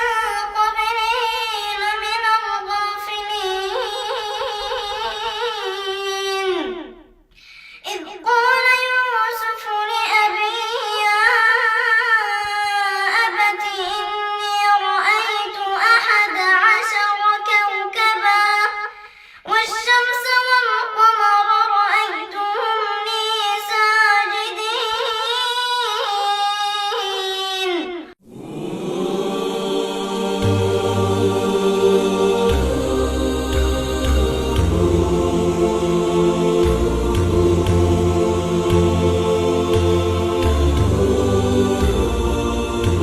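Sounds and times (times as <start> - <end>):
woman reciting melodically: 0.0 - 7.0, 7.8 - 28.1.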